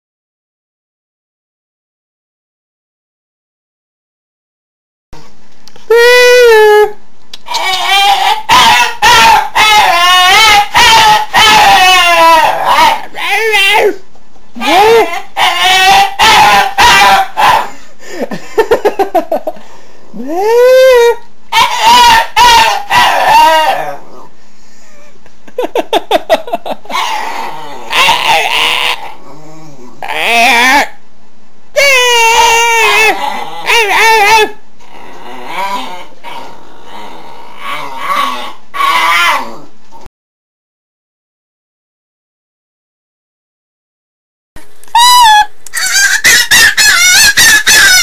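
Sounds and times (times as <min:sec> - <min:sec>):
dog warbling and moaning: 0:05.9 - 0:17.7, 0:20.1 - 0:25.2, 0:26.8 - 0:31.0, 0:31.8 - 0:40.1.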